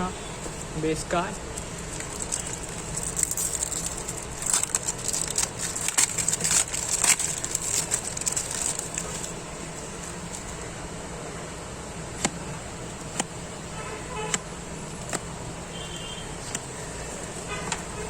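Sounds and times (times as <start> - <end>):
foil packet crinkling: 1.4 - 10.6.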